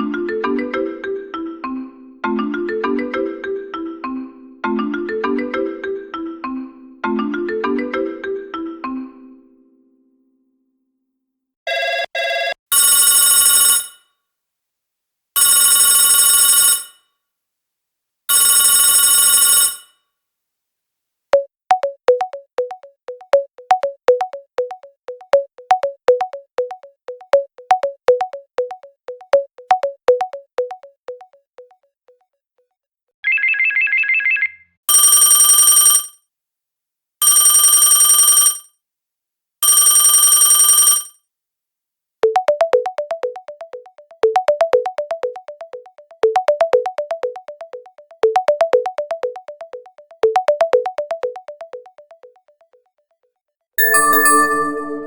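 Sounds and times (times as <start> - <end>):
melodic ringtone: 0.0 - 6.5, 21.4 - 31.8, 42.2 - 52.8, 53.8 - 55.0
electronic telephone ring: 11.7 - 14.0, 15.4 - 16.9, 18.3 - 19.9, 34.9 - 36.1, 37.2 - 38.6, 39.6 - 41.1, 42.2 - 52.4, 53.8 - 55.0.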